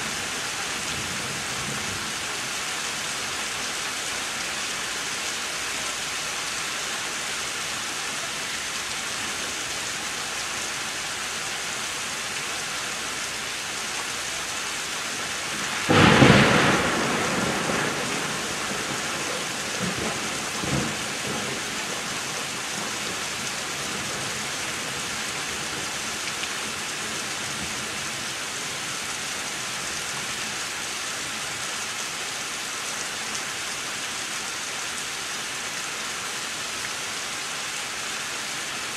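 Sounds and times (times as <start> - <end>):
heavy rain falling: 0.0 - 38.9
thunder crack and rumble: 15.6 - 23.2.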